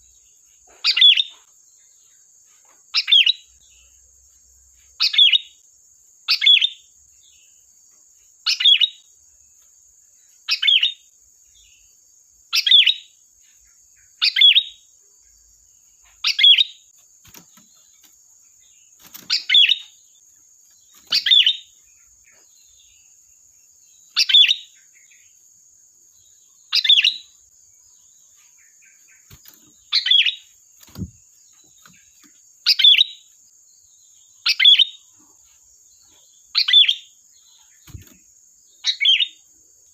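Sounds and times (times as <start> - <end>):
faint high-pitched hiss: 0.0 - 39.9
bulbul giving sharp calls: 0.7 - 1.4, 19.0 - 19.9, 20.9 - 21.7, 29.2 - 31.2, 32.7 - 33.2, 36.6 - 37.1, 38.8 - 39.4.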